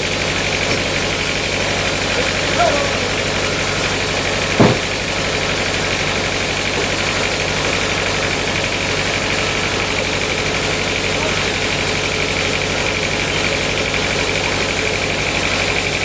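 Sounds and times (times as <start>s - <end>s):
engine idling: 0.0s - 16.0s
short knock: 4.6s - 4.9s.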